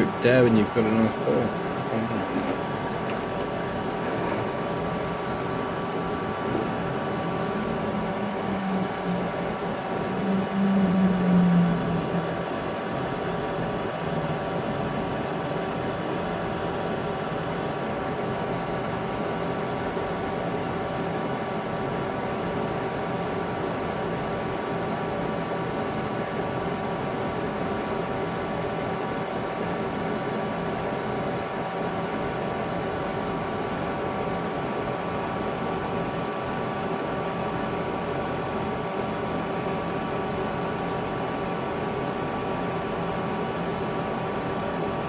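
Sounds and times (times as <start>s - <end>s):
cooling fan hum: 0.0s - 45.0s
low tone: 6.2s - 13.4s.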